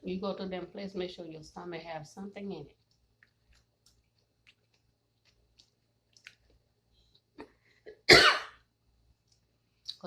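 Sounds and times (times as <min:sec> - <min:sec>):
wet mouth clicks: 0:02.9 - 0:06.6.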